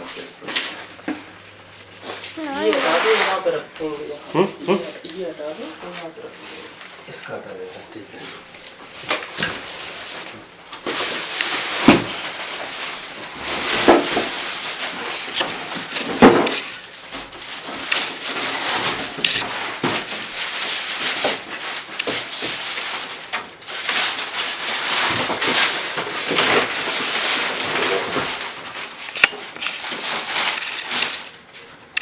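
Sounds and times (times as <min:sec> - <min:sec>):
packaging rustling: 0:08.6 - 0:31.8.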